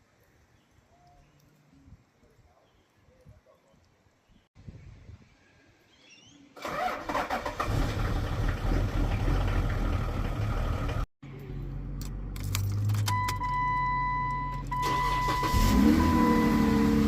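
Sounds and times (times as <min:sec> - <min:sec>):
vehicle engine humming: 0:07.6 - 0:17.0.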